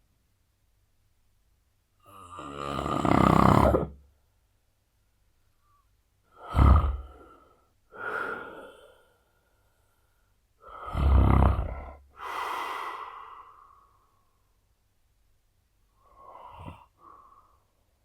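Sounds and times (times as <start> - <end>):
man snoring heavily: 2.0 - 4.0, 6.4 - 7.4, 10.6 - 13.3, 16.1 - 17.0
soft breathy breath: 5.5 - 11.0, 12.1 - 14.5, 15.9 - 18.0.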